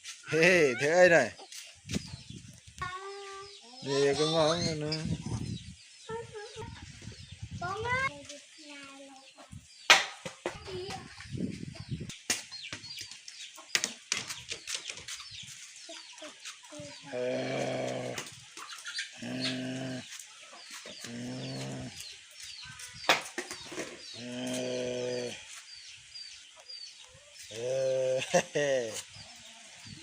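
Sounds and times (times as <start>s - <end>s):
chicken low calls: 17.0s - 18.4s, 19.1s - 20.2s, 21.0s - 22.1s, 24.2s - 25.6s
chicks peeping: 17.9s - 24.6s.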